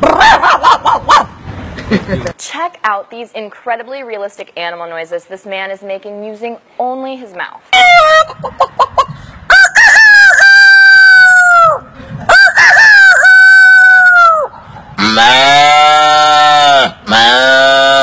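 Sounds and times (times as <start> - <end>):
man imitating rooster crowing: 9.5 - 18.0
man making farm-animal call: 14.2 - 18.0.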